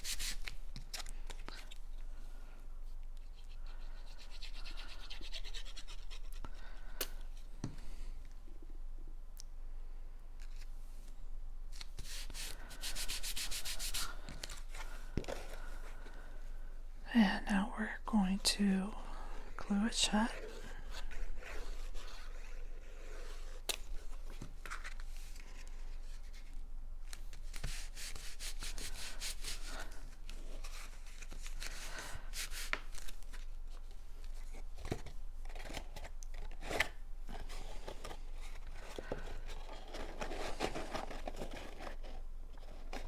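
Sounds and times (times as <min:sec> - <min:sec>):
cardstock rubbing and rustling: 0:27.2 - 0:43.0.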